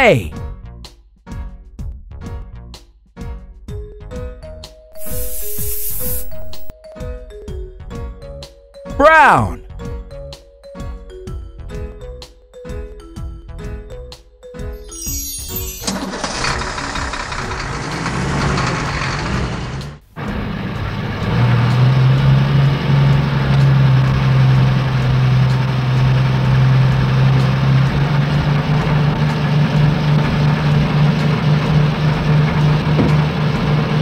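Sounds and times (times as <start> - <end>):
vehicle engine running: 5.0 - 6.7, 15.8 - 34.0.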